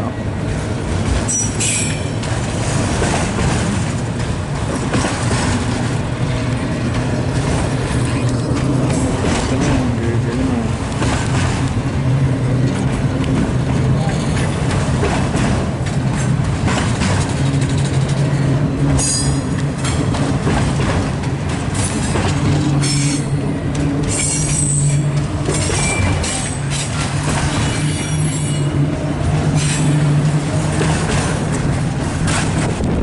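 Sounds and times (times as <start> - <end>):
train wheels rumbling on rail: 0.0 - 33.0
wheels squealing: 1.2 - 2.5, 21.6 - 32.8.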